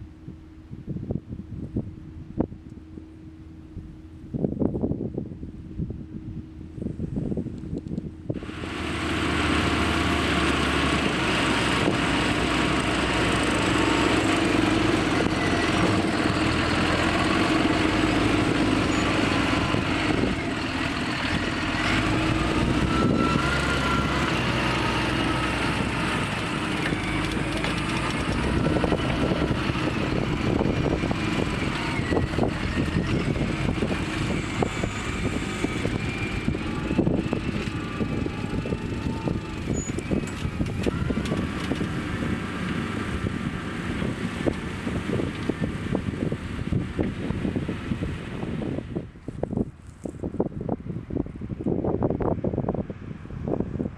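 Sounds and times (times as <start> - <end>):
tractor diesel engine running: 0.0 - 53.9
plough knocks and rattles: 26.8 - 29.2.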